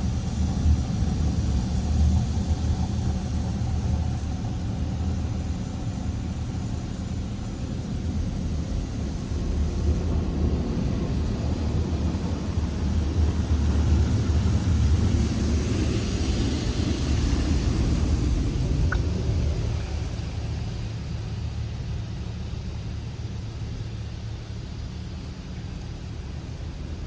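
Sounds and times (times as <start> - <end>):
car wash low rumble: 0.0 - 27.0
water spray hissing on car: 12.4 - 21.4.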